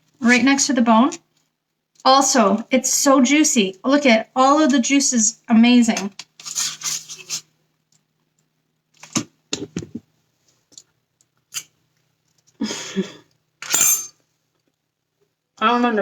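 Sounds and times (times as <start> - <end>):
rustling: 6.4 - 7.5.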